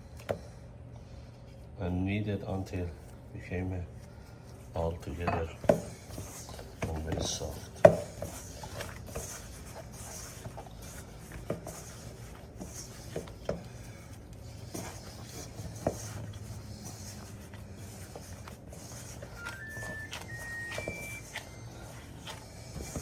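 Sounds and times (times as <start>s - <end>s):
hands kneading dough: 1.4s - 23.0s.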